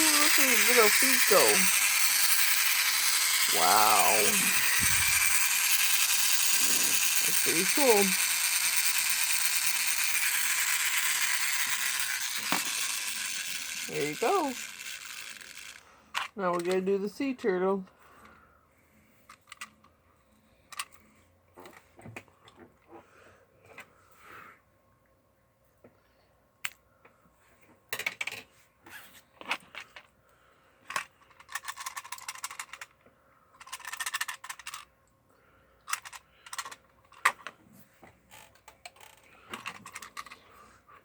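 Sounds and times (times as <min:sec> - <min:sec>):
rapid rattling: 0:00.0 - 0:15.8.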